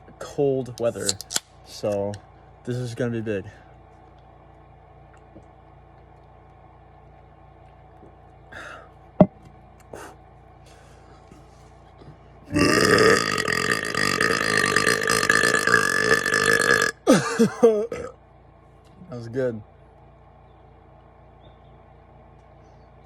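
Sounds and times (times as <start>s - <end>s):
man burping loudly: 12.5s - 18.2s.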